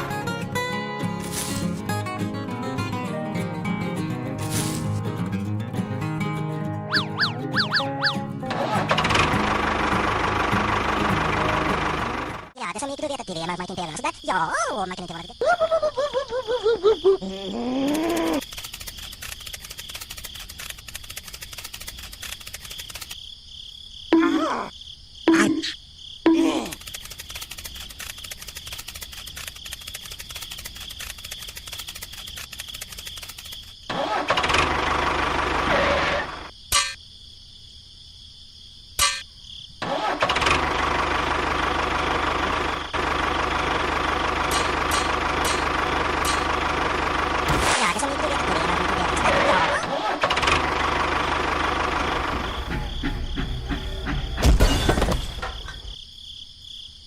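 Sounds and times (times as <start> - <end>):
short falling calls: 6.9 - 8.8
engine running: 6.9 - 12.6, 26.8 - 36.5, 39.8 - 54.6
crickets chirping: 12.6 - 40.2, 41.6 - 47.4, 48.0 - 57.0
sharp clicks: 17.9 - 23.2, 26.6 - 33.8.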